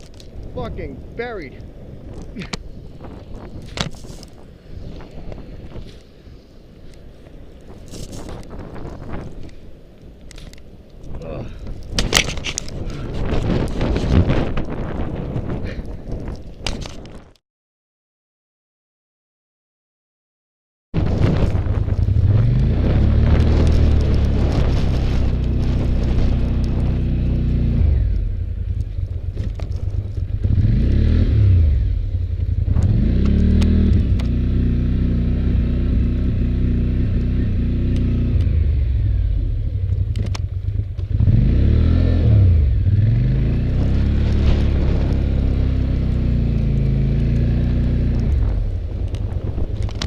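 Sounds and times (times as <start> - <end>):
plow blade scraping: 21.0 - 28.0, 42.4 - 48.5
atv engine revving under load: 21.8 - 49.2.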